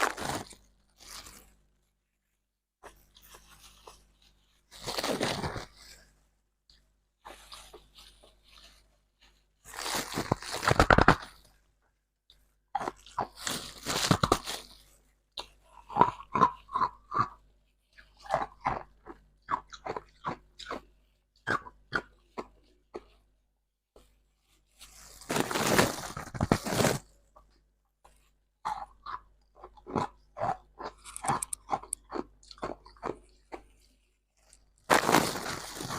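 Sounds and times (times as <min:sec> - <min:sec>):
ice crunching bites: 0:00.0 - 0:01.4, 0:30.8 - 0:33.2, 0:34.8 - 0:35.9
chewing ice crunches: 0:12.8 - 0:14.8, 0:15.4 - 0:17.4, 0:18.0 - 0:23.2, 0:28.6 - 0:35.9.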